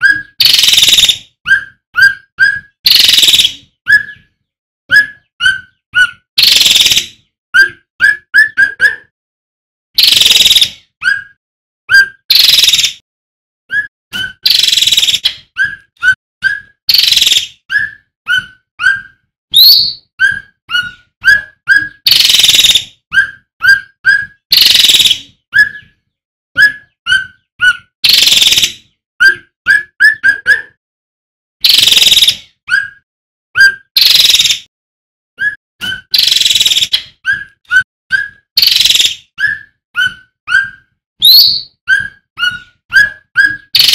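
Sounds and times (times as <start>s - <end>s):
harsh rasping bird calls: 0.0s - 4.3s, 16.4s - 25.9s, 35.4s - 37.5s, 38.2s - 43.9s
songbird whistled notes: 0.0s - 4.3s, 13.7s - 26.0s, 35.4s - 43.9s.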